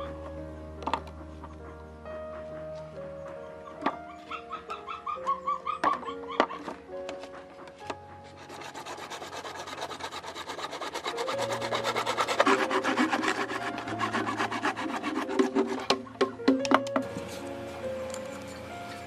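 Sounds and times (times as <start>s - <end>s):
background music: 0.0s - 19.0s
hand tool scraping workpiece: 7.8s - 16.4s.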